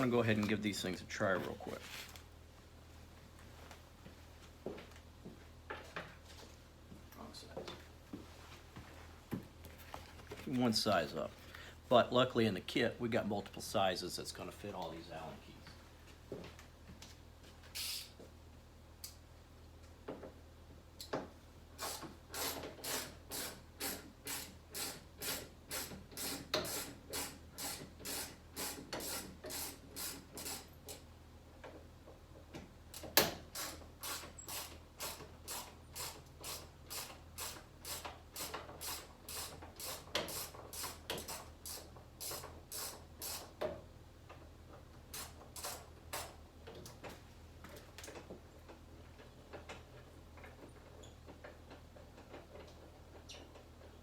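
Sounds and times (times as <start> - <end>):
ratchet wrench clicking: 17.8 - 18.1.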